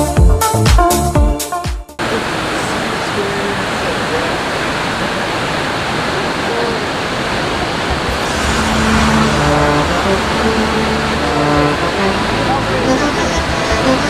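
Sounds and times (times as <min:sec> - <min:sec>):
waterfall roaring: 0:02.0 - 0:14.0
held musical notes: 0:08.2 - 0:14.0.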